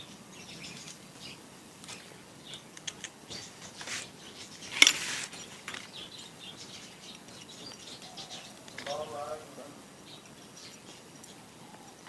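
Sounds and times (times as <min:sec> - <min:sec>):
airgun parts clicking and rustling: 0:01.9 - 0:06.0.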